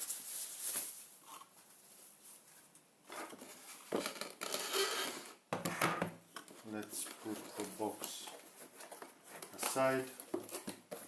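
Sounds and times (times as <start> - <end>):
cardboard packaging rustling: 6.5 - 11.0.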